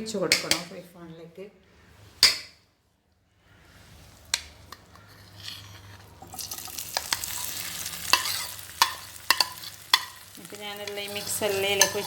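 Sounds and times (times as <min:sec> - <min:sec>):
hot oil sizzling in a pan: 0:06.2 - 0:12.0.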